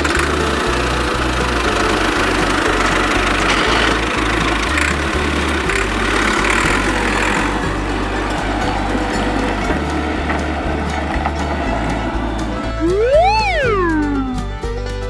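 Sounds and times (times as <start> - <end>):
background music with bass: 0.0 - 15.0
vehicle engine running: 0.0 - 15.0.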